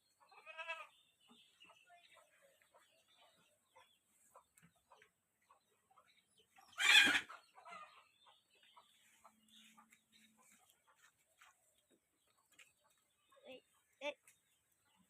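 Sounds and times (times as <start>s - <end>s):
harsh farm animal call: 0.2s - 1.8s, 6.6s - 8.4s.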